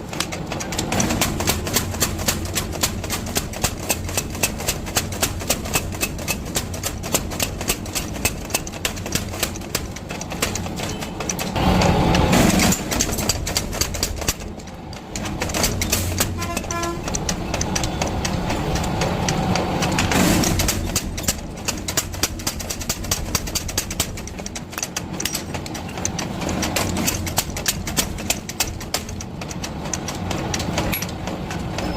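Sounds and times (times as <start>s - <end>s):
power hammer striking steel: 0.0s - 31.9s
loud rough noise: 15.2s - 21.7s.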